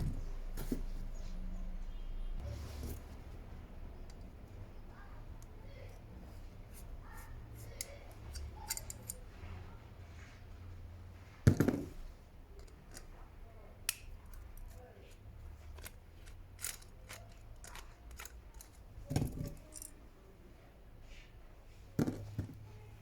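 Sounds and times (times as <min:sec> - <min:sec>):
metal parts clicking and clinking: 0:07.6 - 0:09.3, 0:12.6 - 0:13.2, 0:13.9 - 0:20.0.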